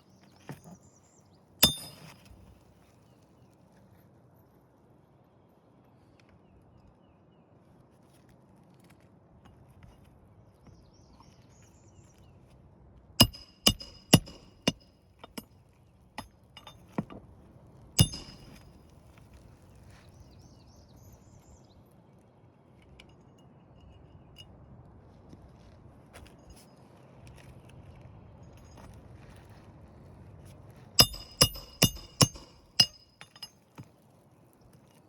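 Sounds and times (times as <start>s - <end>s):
hammer striking metal: 1.6s - 2.2s, 13.2s - 15.4s, 18.0s - 18.6s, 31.0s - 33.5s.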